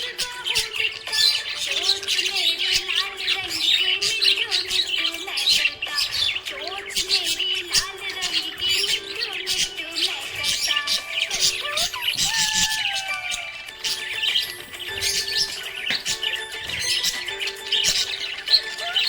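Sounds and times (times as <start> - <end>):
background music: 0.0 - 19.0
budgerigars chirping: 0.0 - 19.0.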